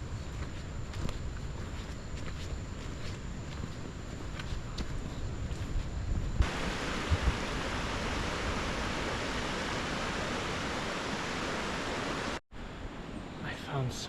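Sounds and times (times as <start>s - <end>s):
river water rushing: 6.4s - 12.4s.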